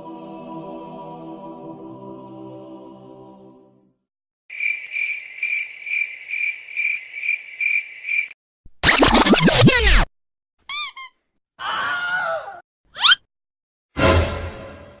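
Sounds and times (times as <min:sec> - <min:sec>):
chant-like tone: 0:00.0 - 0:03.9
cricket chirping: 0:04.5 - 0:08.4.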